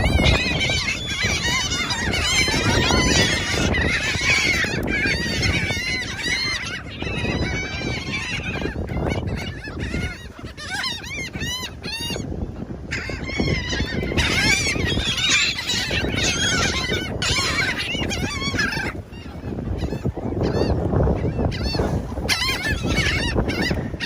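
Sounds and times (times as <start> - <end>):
gulls calling: 0.0 - 24.0.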